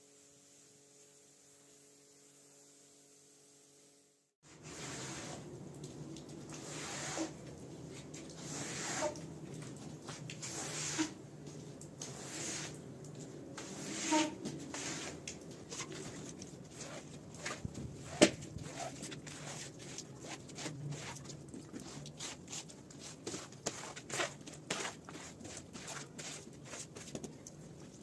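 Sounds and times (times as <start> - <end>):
cleaning tool scrubbing wet rug: 4.5 - 5.5, 6.5 - 9.2, 9.8 - 11.2, 12.0 - 12.8, 13.5 - 27.2.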